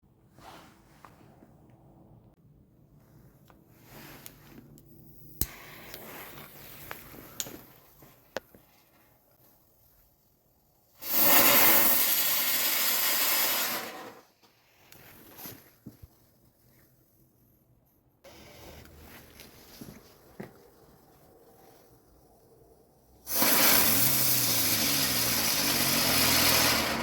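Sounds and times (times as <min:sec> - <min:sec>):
firework click: 0:11.0 - 0:14.2, 0:23.2 - 0:27.0
spinner firework hissing: 0:11.0 - 0:14.2, 0:20.3 - 0:27.0.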